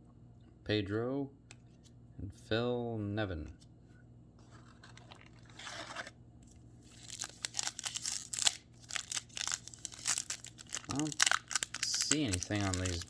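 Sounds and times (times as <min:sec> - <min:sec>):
foil wrapper crinkling and tearing: 0:06.8 - 0:13.0.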